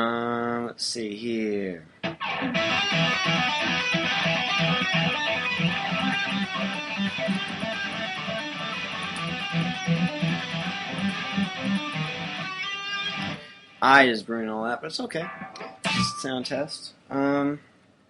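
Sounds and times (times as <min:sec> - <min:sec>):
electric guitar fast picked notes: 0:02.1 - 0:13.5, 0:15.1 - 0:16.5.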